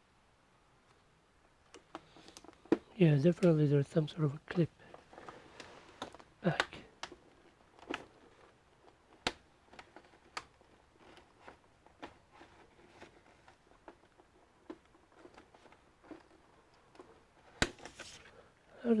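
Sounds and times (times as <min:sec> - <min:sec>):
plastic case clicks and taps: 0:09.2 - 0:09.4.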